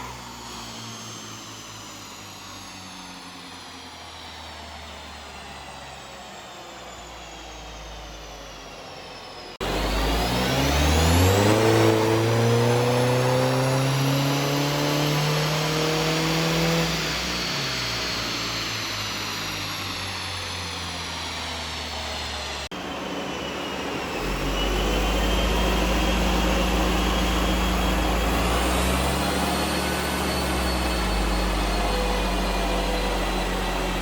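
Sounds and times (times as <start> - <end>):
engine spin-down whine: 0.0 - 34.0
diesel engine revving: 9.5 - 34.0
turbo whistle: 23.1 - 34.0.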